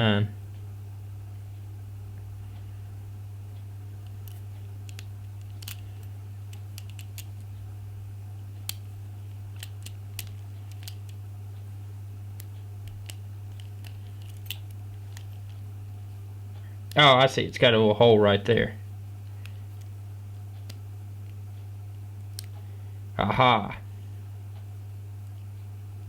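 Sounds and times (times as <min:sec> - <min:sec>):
steady low hum: 0:00.0 - 0:26.0
combination lock dials clicking: 0:03.6 - 0:07.7, 0:08.5 - 0:11.7, 0:12.3 - 0:15.7.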